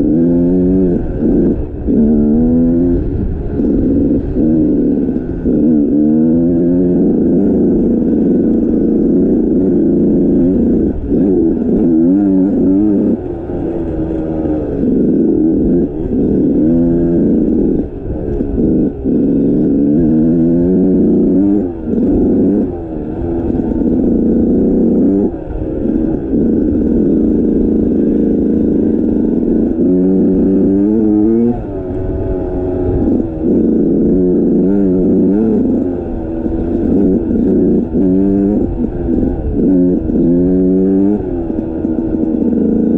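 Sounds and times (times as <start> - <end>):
dirt bike engine revving: 0.0 - 42.9.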